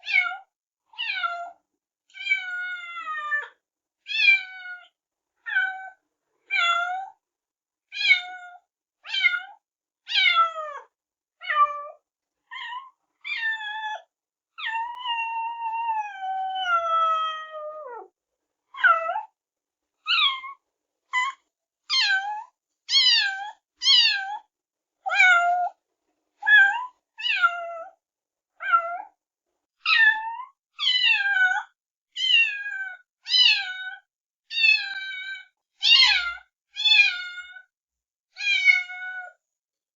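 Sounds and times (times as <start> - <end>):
kittens meowing: 34.5 - 37.6.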